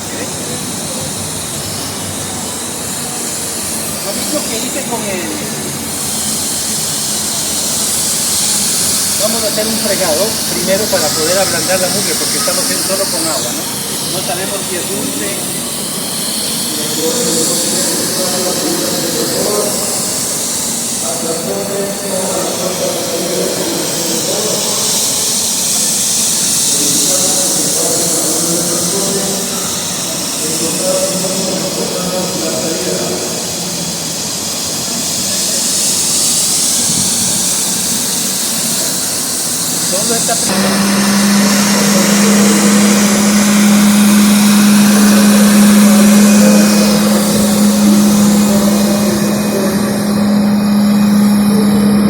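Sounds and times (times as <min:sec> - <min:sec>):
floor scrubber hissing: 0:00.0 - 0:52.0
wavering hum: 0:39.9 - 0:52.0.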